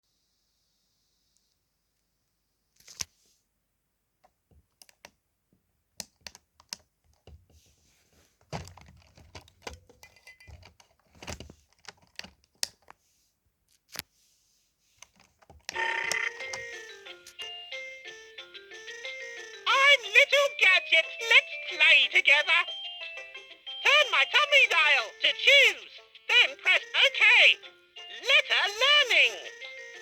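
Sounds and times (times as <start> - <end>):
electronic toy jingle: 15.8 - 30.0.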